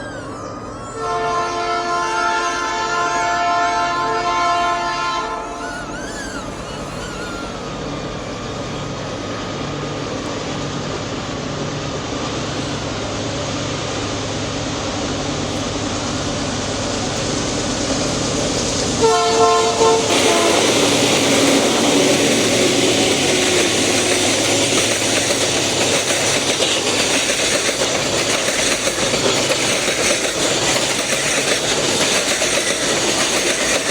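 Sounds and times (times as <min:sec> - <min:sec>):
train rumbling by: 0:00.0 - 0:33.9
locomotive air horn: 0:00.9 - 0:05.6, 0:18.6 - 0:24.6.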